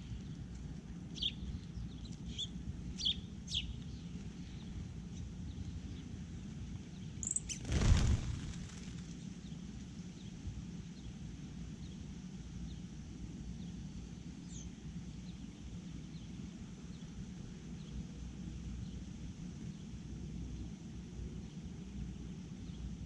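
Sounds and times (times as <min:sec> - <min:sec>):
steady low rumble: 0:07.5 - 0:09.2.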